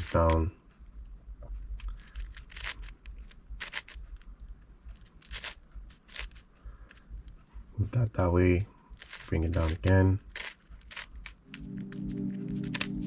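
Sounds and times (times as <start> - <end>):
puzzle cube turning clicks: 0.0 - 1.0, 1.6 - 7.7, 8.8 - 13.0.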